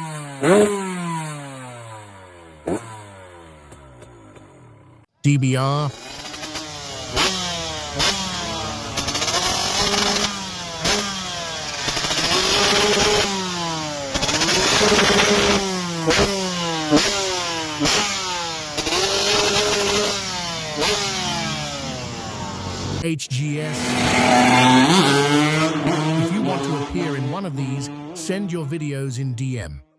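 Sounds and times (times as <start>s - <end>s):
two-stroke engine revving: 0.0s - 4.6s, 5.8s - 23.0s, 23.7s - 28.4s
exhaust crackles: 5.6s - 23.0s.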